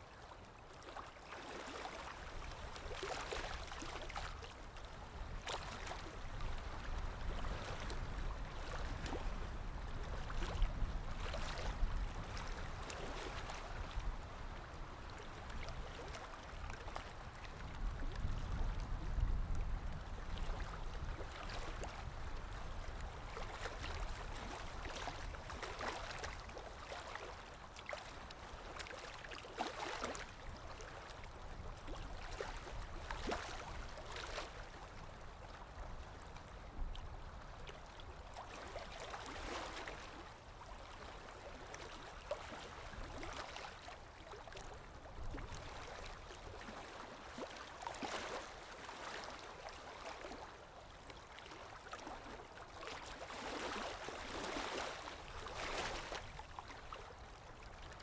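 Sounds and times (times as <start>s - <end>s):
stream water rushing and splashing: 21.4s - 35.2s, 38.4s - 58.0s.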